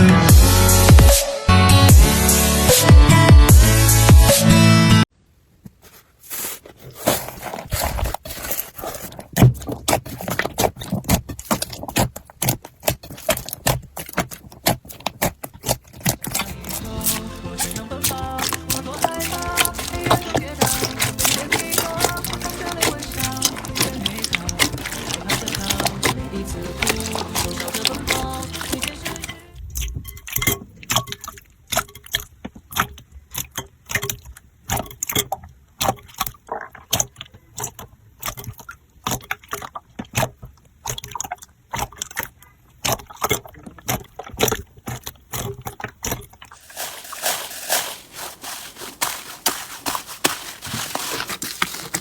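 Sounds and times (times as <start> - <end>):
music: 0.0 - 5.0, 16.5 - 29.5
slime squished by hand: 6.3 - 44.6, 45.4 - 52.0.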